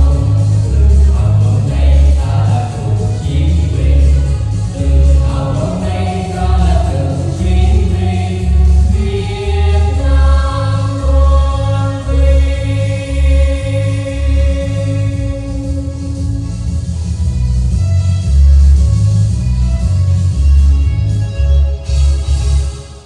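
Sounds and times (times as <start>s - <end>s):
voices singing in harmony: 0.0s - 16.5s
backing track with bass beat: 0.0s - 22.8s.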